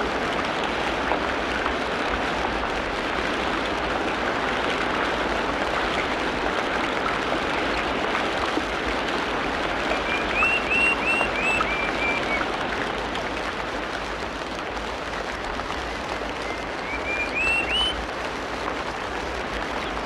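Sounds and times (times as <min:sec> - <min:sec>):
rushing water: 0:00.0 - 0:20.0
bird chirping: 0:09.9 - 0:12.4, 0:16.4 - 0:18.0.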